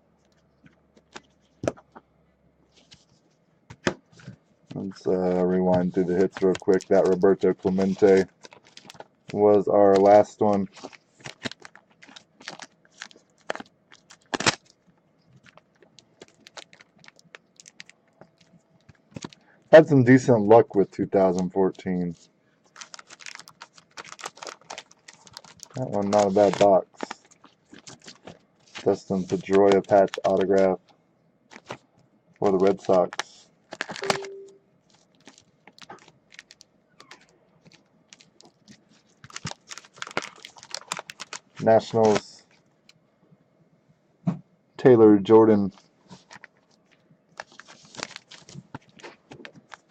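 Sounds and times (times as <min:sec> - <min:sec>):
trading cards being shuffled: 0:03.8 - 0:13.6, 0:21.2 - 0:30.8, 0:41.6 - 0:42.3.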